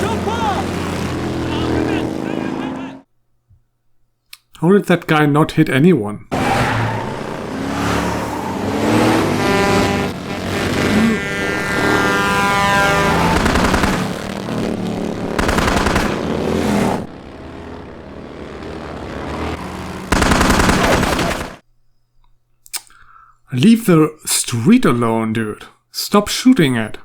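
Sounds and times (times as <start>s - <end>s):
vehicle engines running: 0.0s - 3.0s, 6.3s - 21.6s
rapid automatic gunfire: 13.0s - 17.2s, 19.6s - 21.6s.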